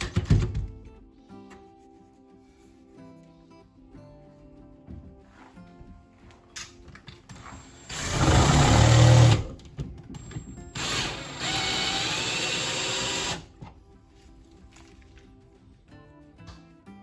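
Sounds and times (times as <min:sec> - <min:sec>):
quiet background music: 0:00.0 - 0:17.0
power drill running: 0:07.3 - 0:09.5, 0:10.2 - 0:13.5.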